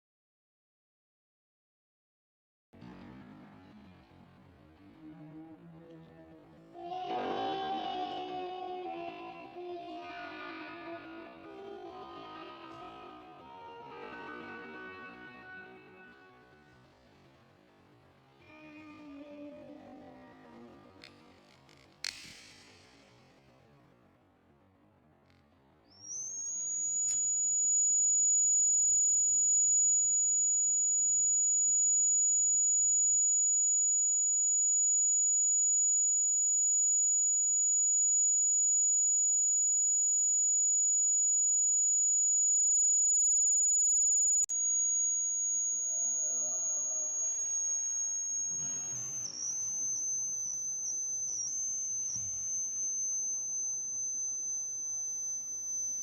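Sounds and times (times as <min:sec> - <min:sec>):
click: 0:21.0 - 0:23.1, 0:26.0 - 0:56.0
shrill high-pitched alarm tone: 0:25.9 - 0:56.0.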